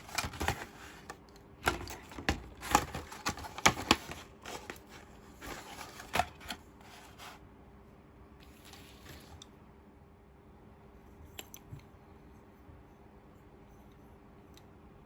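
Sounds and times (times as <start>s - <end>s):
packaging rustling: 0.0s - 7.2s.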